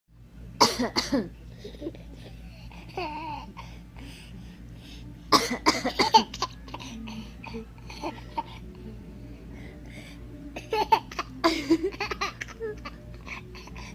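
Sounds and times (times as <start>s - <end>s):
woman coughing: 0.6s - 1.3s, 5.3s - 8.6s, 10.6s - 13.8s.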